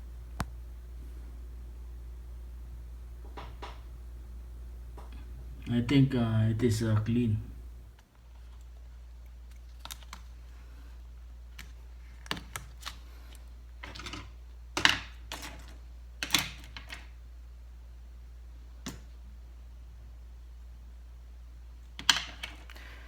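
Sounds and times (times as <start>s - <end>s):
low hum: 0.0s - 8.0s.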